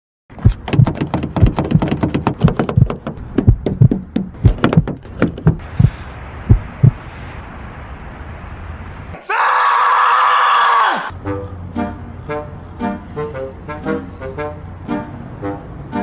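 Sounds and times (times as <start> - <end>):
knocks and thumps: 0.3 - 7.0
faint hiss: 5.6 - 9.2.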